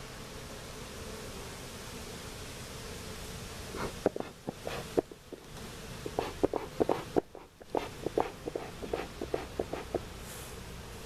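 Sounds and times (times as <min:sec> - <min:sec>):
hive tool scraping wooden frames: 0:03.3 - 0:10.6.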